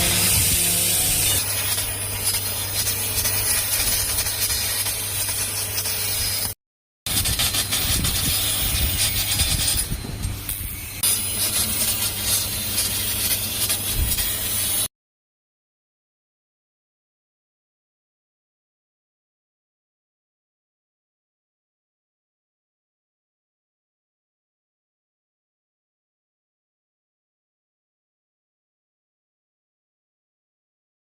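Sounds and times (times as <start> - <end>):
laser cutter hissing and humming: 0.0 - 14.9.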